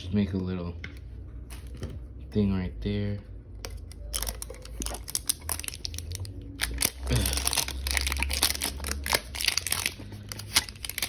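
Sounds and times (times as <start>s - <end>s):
plastic wrap crinkling: 4.0s - 11.0s.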